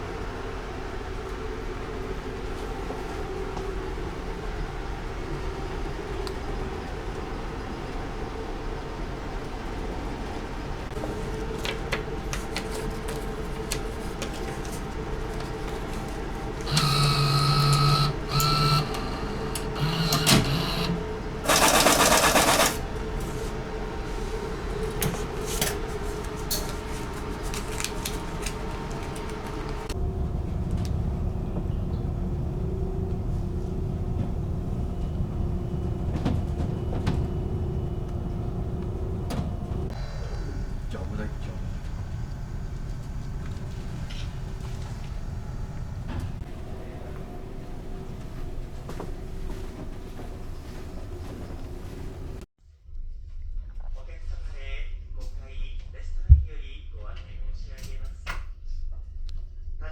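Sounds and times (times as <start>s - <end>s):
ferry engine hum: 0.0s - 52.5s
small machine whirring: 14.8s - 23.8s.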